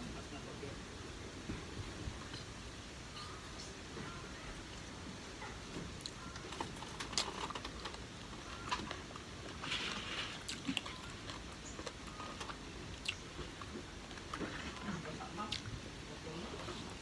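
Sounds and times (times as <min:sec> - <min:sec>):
close-miked chewing: 0:06.0 - 0:17.0.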